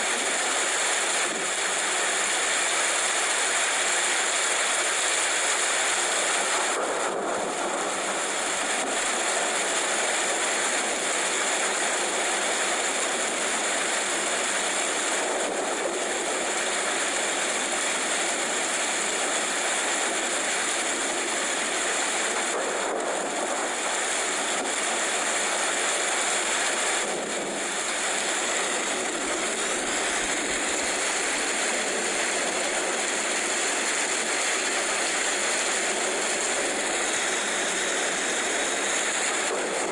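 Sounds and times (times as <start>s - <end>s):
rain falling: 23.8s - 39.9s.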